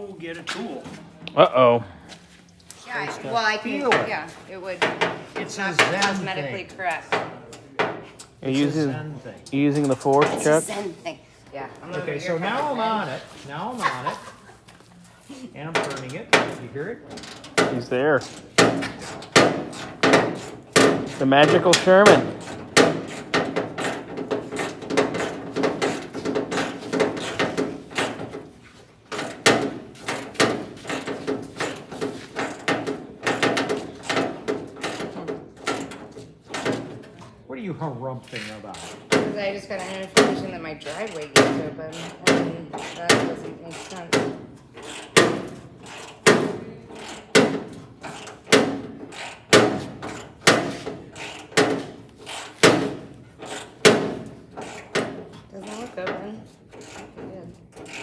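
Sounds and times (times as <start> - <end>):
hammering: 3.0 - 6.3, 15.7 - 16.7, 17.4 - 37.3, 38.4 - 58.0
hand tools on metal bolts: 3.0 - 10.6, 15.7 - 37.4, 38.2 - 58.0.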